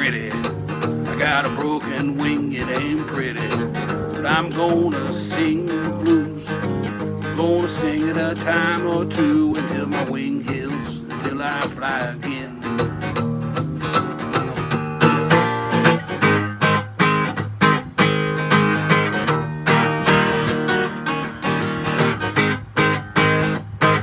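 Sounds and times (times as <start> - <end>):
person singing: 0.0 - 12.9
acoustic guitar strumming blues: 0.0 - 24.0.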